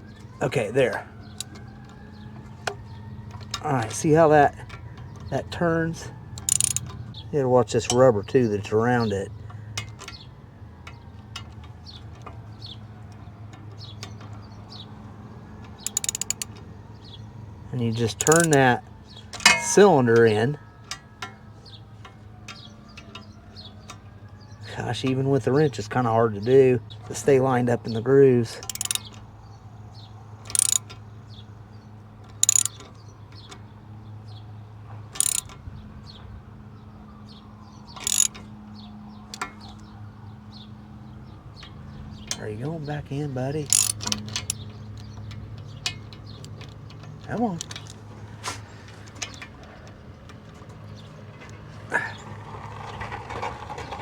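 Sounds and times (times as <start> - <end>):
hand tools clicking: 1.3 - 5.7, 6.3 - 7.2, 13.1 - 16.6, 17.8 - 21.4, 28.6 - 29.3, 30.4 - 31.0, 32.2 - 33.6, 35.1 - 35.6, 37.9 - 38.5, 43.6 - 52.3.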